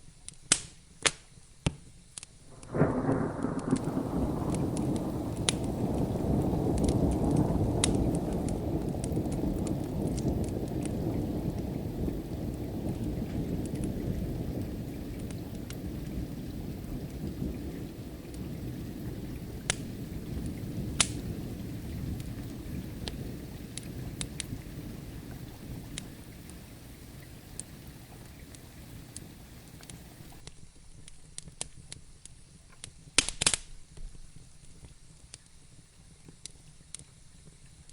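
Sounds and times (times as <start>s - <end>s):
wood fire crackling and popping: 0.3s - 33.8s
steady rain: 2.4s - 30.4s
distant thunder rumble: 2.5s - 30.4s.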